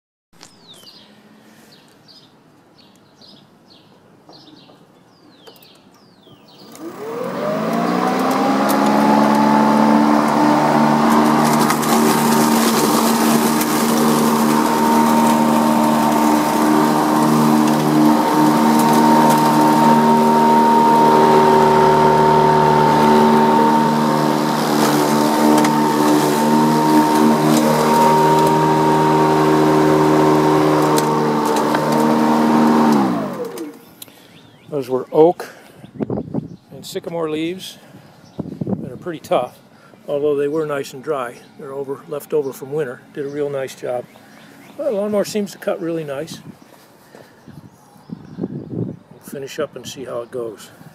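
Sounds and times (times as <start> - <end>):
bird chirping: 0.4 - 8.2, 33.7 - 37.0, 38.0 - 50.8
lawn mower motor whine: 6.5 - 34.1
mower blade whoosh: 6.6 - 33.8.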